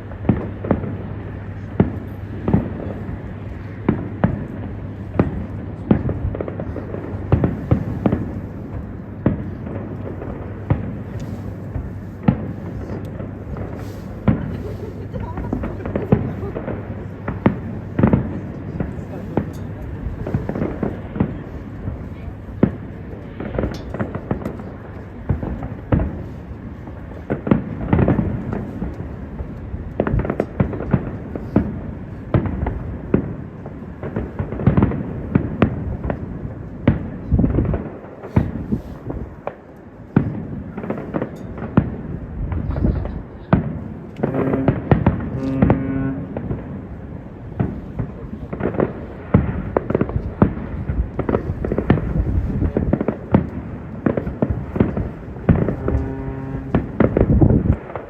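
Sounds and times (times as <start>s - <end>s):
fireworks booming: 0.0s - 58.0s.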